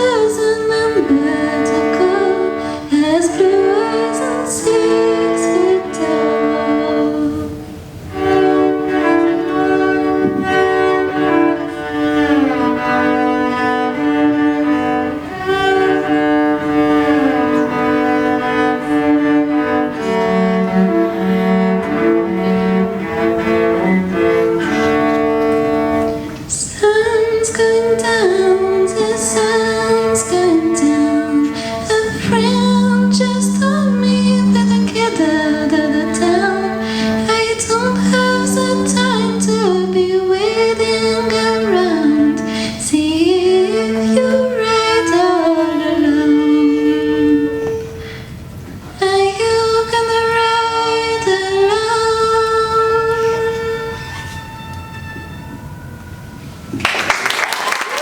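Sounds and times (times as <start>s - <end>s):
woman singing with vibrato: 0.0s - 7.6s, 26.5s - 47.8s, 49.0s - 54.0s
cello bowed notes: 0.0s - 57.4s.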